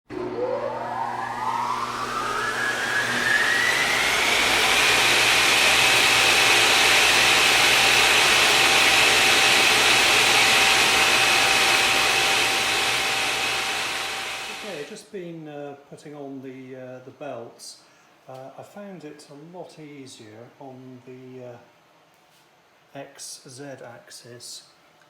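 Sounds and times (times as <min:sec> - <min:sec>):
electric motor whining: 0:00.1 - 0:14.9.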